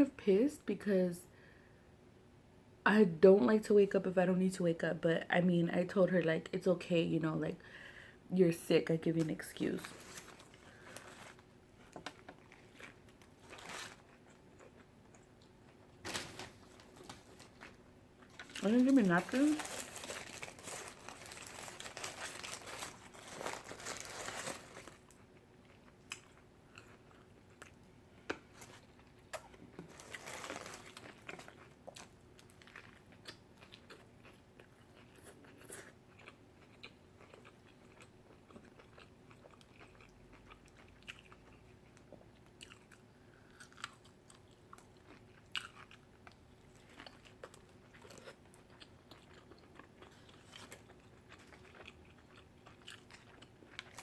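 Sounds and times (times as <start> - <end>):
wrapper crinkling: 9.2 - 14.2, 16.0 - 25.2, 29.8 - 31.6
person chewing food: 10.0 - 16.0, 19.4 - 54.0.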